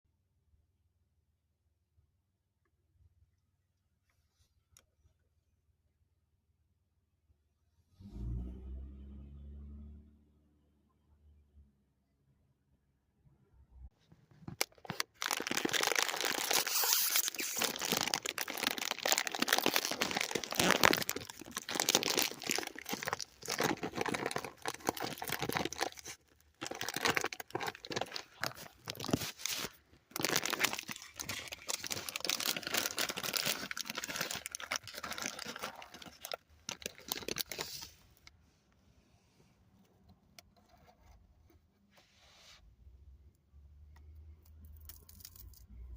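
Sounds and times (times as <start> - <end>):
snack bag crinkling: 14.3 - 37.9.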